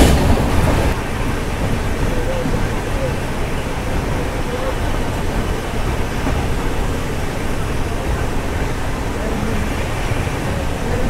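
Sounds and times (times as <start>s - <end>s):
train wheels on rails: 0.0s - 11.0s.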